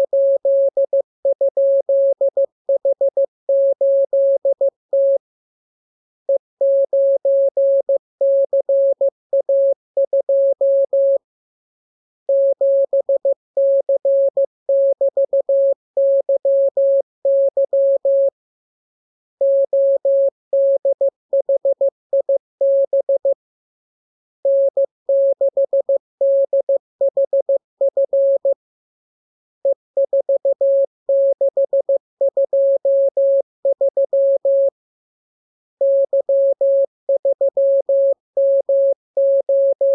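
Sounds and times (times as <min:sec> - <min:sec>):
morse code tone: 0:35.8 - 0:39.9.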